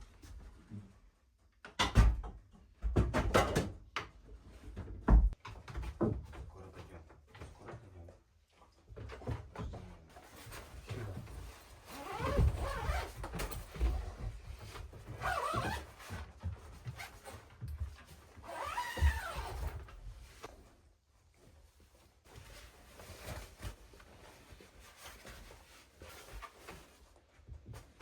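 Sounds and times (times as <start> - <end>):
knocks and thumps: 1.8 - 4.1, 4.8 - 6.5.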